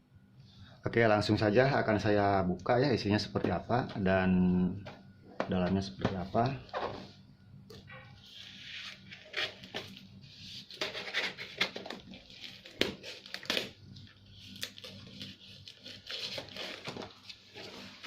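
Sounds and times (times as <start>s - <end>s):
packaging rustling: 8.9s - 18.0s.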